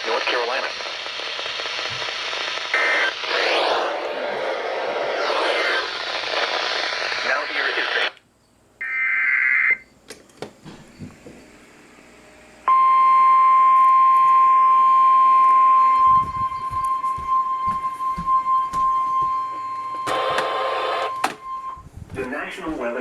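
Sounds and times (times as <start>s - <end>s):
high warning alarm tone: 12.7s - 21.9s.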